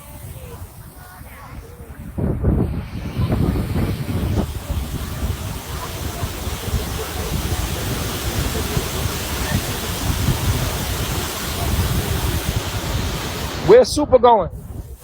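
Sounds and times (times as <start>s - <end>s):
waterfall rushing water: 2.8s - 13.8s.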